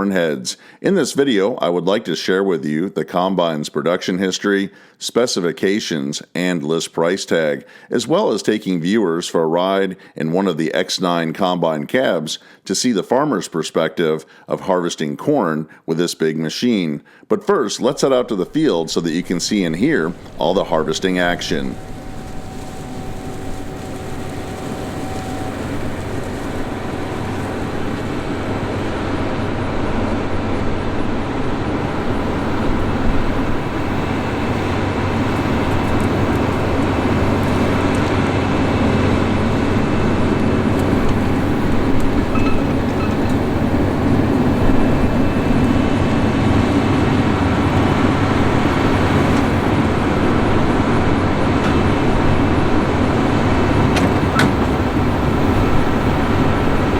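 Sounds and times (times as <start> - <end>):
combine harvester engine running: 17.9 - 56.9.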